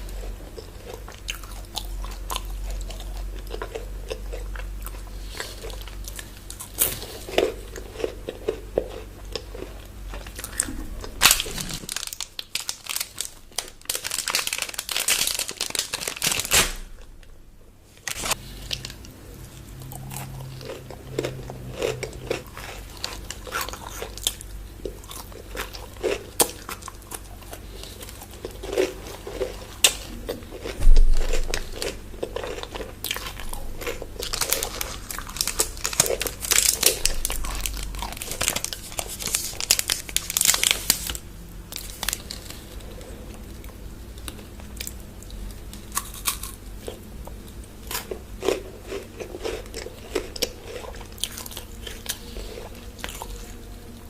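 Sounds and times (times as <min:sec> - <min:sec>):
crunchy bites and chewing: 0:00.0 - 0:16.8, 0:18.1 - 0:42.8, 0:44.2 - 0:54.0
wrapper crinkling: 0:10.4 - 0:16.9, 0:18.0 - 0:19.1, 0:33.8 - 0:42.8.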